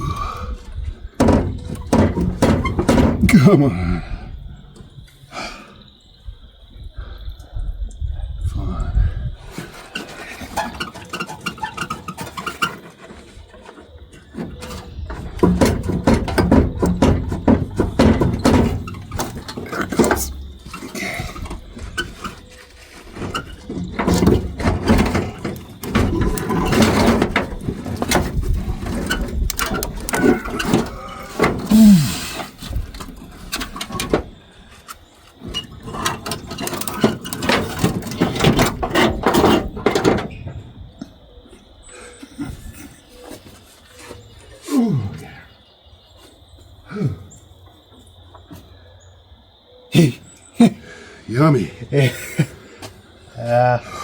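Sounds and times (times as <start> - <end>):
metal tools clanking and scraping: 0.0 - 3.7, 9.5 - 40.6.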